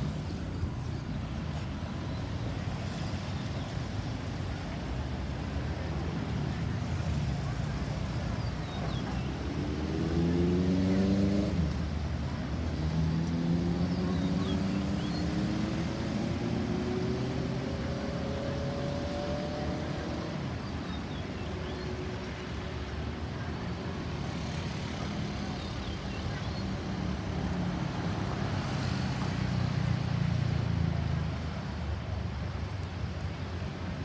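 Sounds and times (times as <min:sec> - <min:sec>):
traffic rumble: 0:00.0 - 0:34.0
vehicle engine accelerating: 0:09.4 - 0:20.5.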